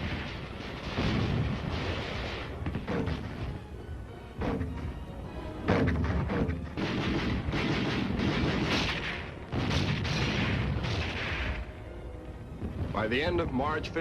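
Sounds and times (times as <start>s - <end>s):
artillery guns firing: 0.0s - 3.6s, 5.6s - 11.8s
rolling rumble: 0.0s - 14.0s.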